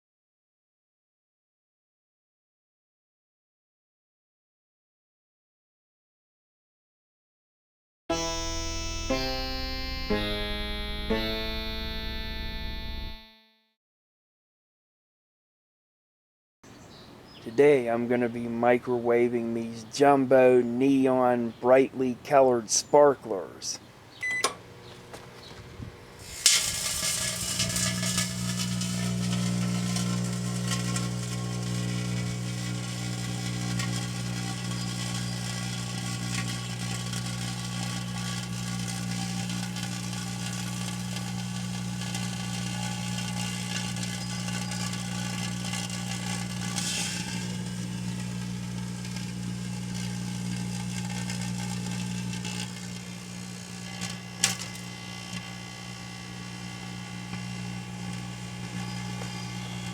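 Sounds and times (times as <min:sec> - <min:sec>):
microwave oven humming: 0:08.1 - 0:13.3, 0:24.1 - 0:59.9
sparklers fizzing and crackling: 0:26.2 - 0:51.7.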